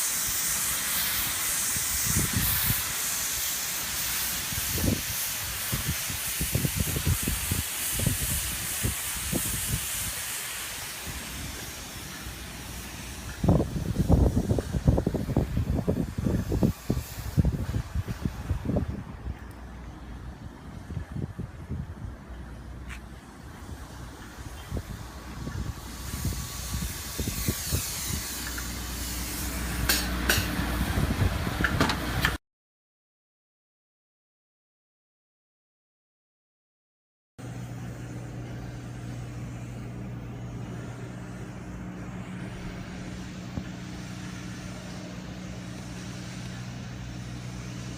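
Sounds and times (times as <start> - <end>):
spray coating hiss: 0.0 - 32.4, 37.5 - 47.9
low machine hum: 37.4 - 47.9.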